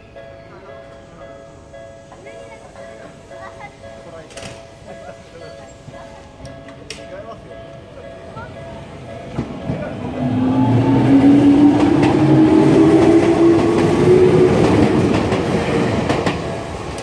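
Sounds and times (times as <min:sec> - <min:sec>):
electric train running: 0:08.4 - 0:17.0.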